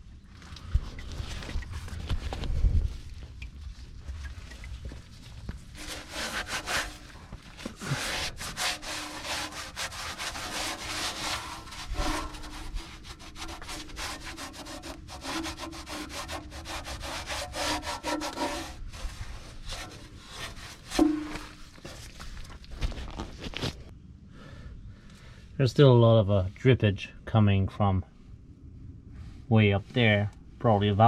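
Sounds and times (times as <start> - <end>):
rough scraping strokes: 5.6 - 23.9.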